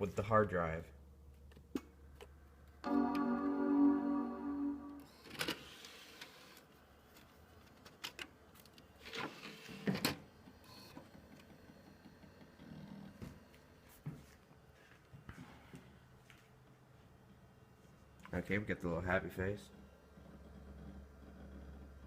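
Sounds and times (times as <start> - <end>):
computer startup chime: 2.8 - 5.1.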